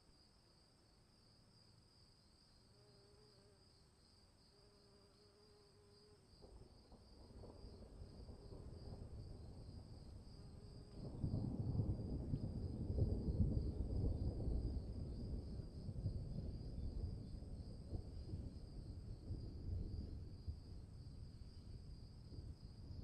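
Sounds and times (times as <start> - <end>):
insects chirring: 0.0 - 23.0
low storm rumble: 6.8 - 23.0.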